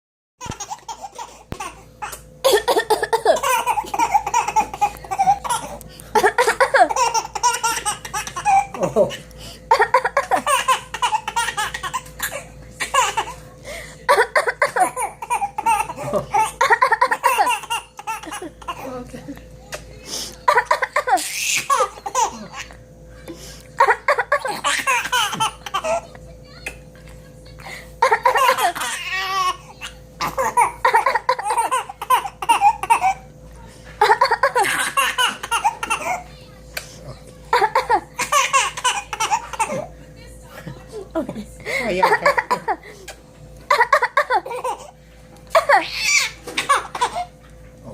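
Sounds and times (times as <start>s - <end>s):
breaths: 13.6s - 14.1s.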